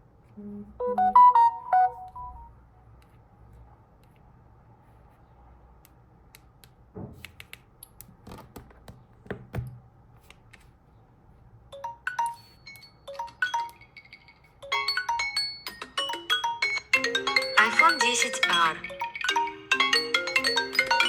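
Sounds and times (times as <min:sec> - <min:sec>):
smartphone alarm chiming melody: 0:00.8 - 0:02.5, 0:11.7 - 0:21.0
clicks and taps: 0:05.8 - 0:10.7.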